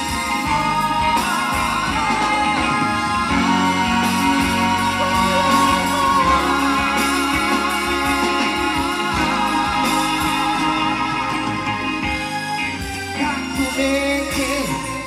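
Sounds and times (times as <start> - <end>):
guitar lead line: 0.0 - 15.0
reggae band playing: 0.0 - 15.0.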